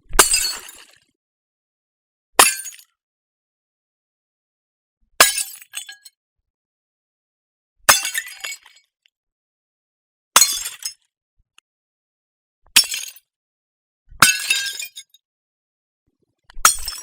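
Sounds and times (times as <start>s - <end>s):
glass bottle smashing: 16.6s - 17.0s.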